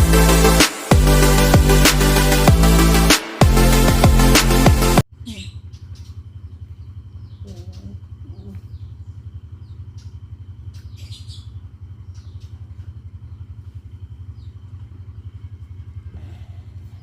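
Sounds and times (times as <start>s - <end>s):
faint clicks and squeaks: 5.5s - 9.0s, 9.6s - 14.9s.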